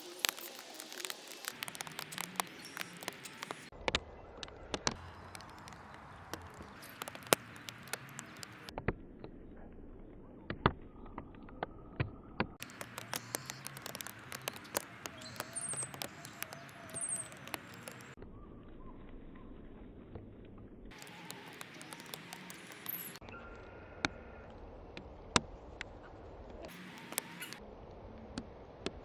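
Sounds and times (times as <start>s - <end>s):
birds pecking taps and clicks: 0.0s - 3.7s, 4.8s - 8.7s, 12.6s - 18.2s, 20.9s - 23.2s, 26.7s - 27.6s
high bird chirps: 0.3s - 3.7s, 12.6s - 19.0s.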